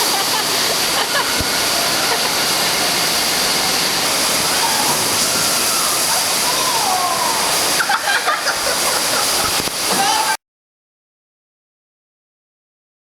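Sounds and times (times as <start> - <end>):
rushing water: 0.0 - 10.4.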